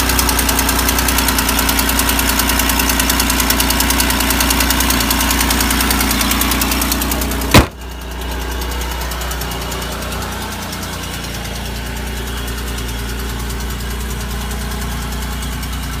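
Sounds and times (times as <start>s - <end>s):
loud sharp engine knock: 0.0s - 8.1s
car engine idling: 0.0s - 16.0s
rapid exhaust ticking: 0.0s - 16.0s.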